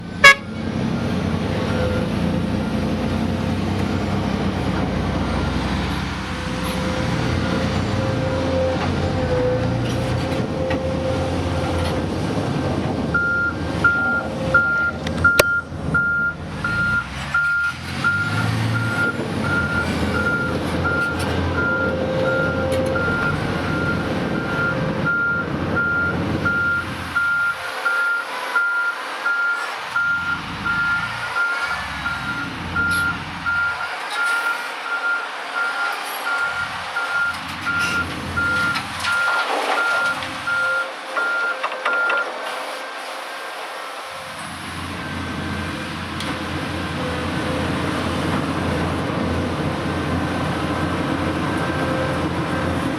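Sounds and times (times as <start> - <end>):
diesel engines running: 0.0 - 52.9
back-up alarm beeping: 13.2 - 42.3.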